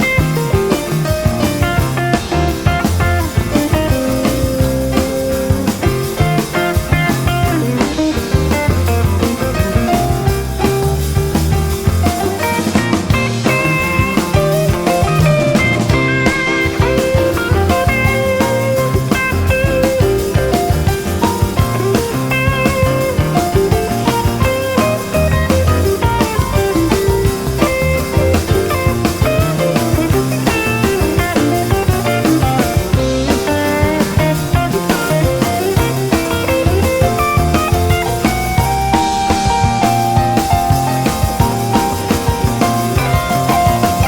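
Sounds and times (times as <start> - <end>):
instrumental rock music: 0.0 - 44.0.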